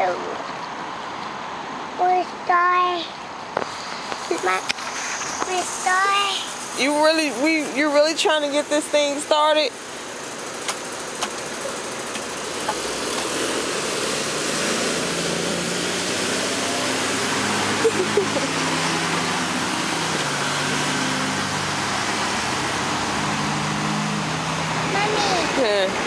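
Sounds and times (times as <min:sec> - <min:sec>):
engine running steadily: 0:03.0 - 0:26.0
broad rushing hiss: 0:03.6 - 0:06.8.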